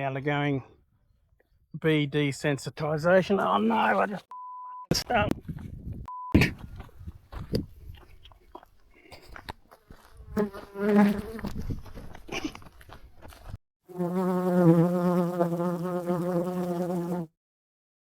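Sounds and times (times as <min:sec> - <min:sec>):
honeybee buzzing: 0:10.2 - 0:11.5, 0:13.9 - 0:17.3.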